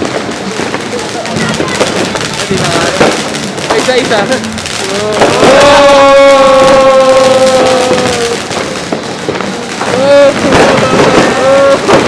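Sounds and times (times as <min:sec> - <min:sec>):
fireworks crackling and popping: 0:00.0 - 0:12.0
people exclaiming ooh: 0:04.8 - 0:08.9, 0:09.8 - 0:12.0.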